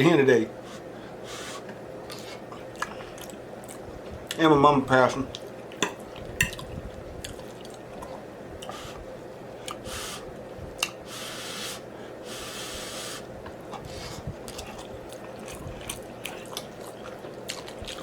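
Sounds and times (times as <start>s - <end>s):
wet chewing and smacking: 2.1s - 4.4s, 5.3s - 8.7s, 13.9s - 18.0s.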